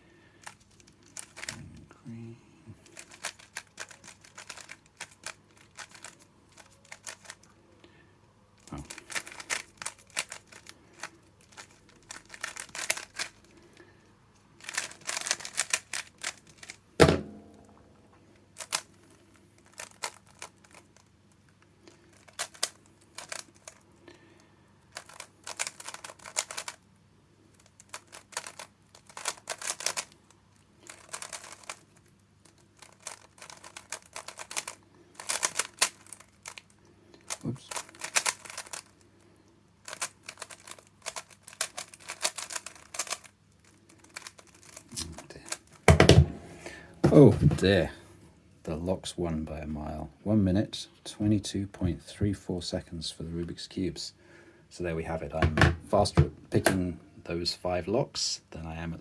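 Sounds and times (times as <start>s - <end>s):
puzzle cube clicking: 0.4s - 1.6s, 2.9s - 7.5s, 8.6s - 13.5s, 14.6s - 16.8s, 22.1s - 23.8s, 25.0s - 26.8s, 27.5s - 30.1s, 30.9s - 36.7s, 37.3s - 38.9s, 39.8s - 45.8s
heavy thump: 17.0s - 17.8s, 45.9s - 48.0s.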